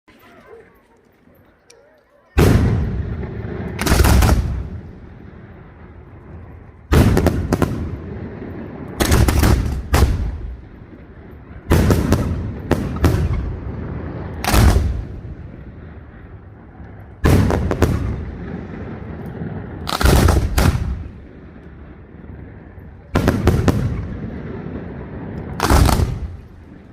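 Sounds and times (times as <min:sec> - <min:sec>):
fireworks bursting in loud bangs: 0:02.4 - 0:05.4, 0:06.9 - 0:10.7, 0:11.7 - 0:16.2, 0:17.2 - 0:21.4, 0:22.5 - 0:26.9.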